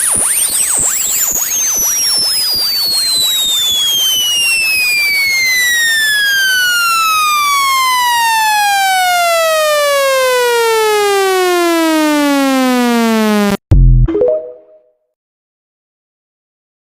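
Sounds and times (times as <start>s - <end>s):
brief tones: 14.1s - 14.9s.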